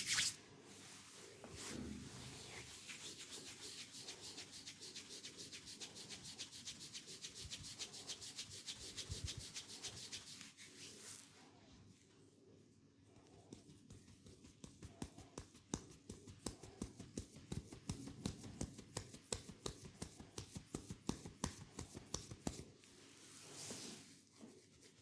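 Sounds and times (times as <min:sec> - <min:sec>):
hands rubbing quickly: 0:00.0 - 0:00.4, 0:02.4 - 0:11.1.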